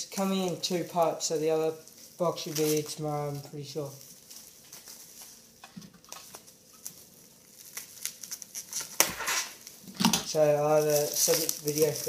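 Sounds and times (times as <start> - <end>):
packaging rustling and clicking: 4.2 - 12.0.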